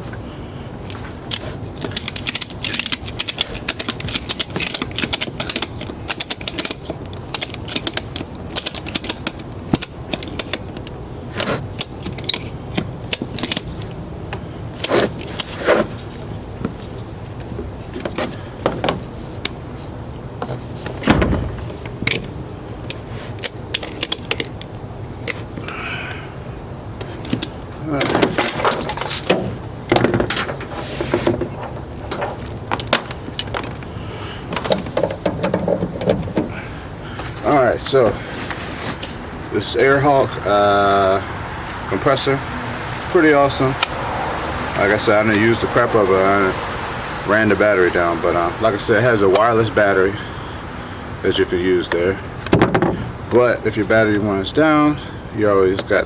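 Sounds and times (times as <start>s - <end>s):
ratchet strap clicking: 1.3s - 14.0s, 22.9s - 25.8s
handling knocks: 20.4s - 22.3s.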